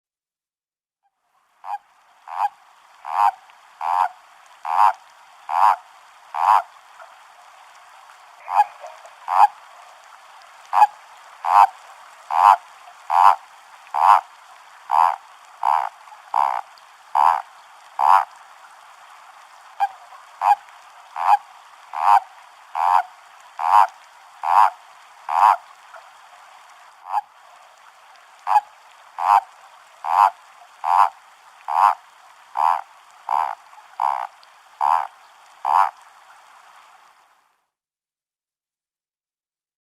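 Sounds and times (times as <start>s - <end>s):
toad croaking: 1.6s - 6.7s, 8.4s - 10.0s, 10.7s - 14.3s, 14.9s - 18.3s, 19.8s - 20.6s, 21.2s - 25.6s, 27.0s - 27.3s, 28.4s - 36.0s.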